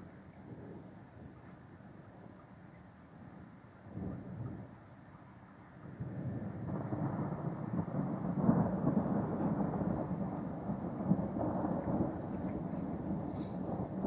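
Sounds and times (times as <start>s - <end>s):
thunder rumbling: 5.8s - 14.0s.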